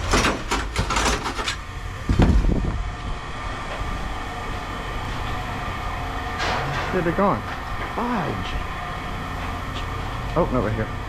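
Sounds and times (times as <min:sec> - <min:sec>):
scrap metal clanking: 0:00.0 - 0:01.7
mechanical rumble: 0:00.0 - 0:07.0.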